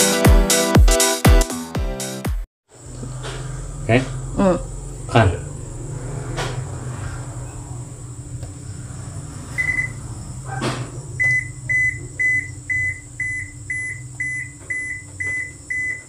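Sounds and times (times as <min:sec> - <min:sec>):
washing machine beeps: 0:09.6 - 0:10.0, 0:11.2 - 0:16.0.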